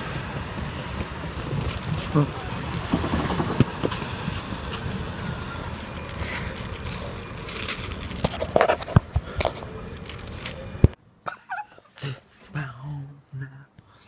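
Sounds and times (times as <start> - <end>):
car driving: 0.0 - 11.0.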